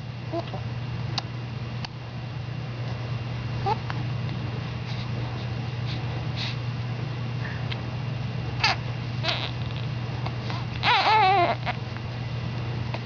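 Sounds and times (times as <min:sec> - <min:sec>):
baby whimpering cry: 0:08.6 - 0:09.8, 0:10.8 - 0:11.8.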